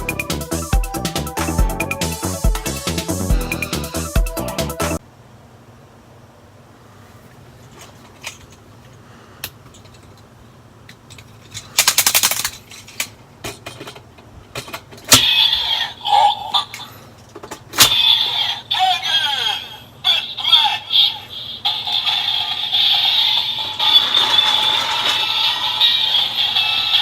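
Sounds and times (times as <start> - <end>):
toy electronic sound effects: 15.1 - 16.8, 17.8 - 27.0.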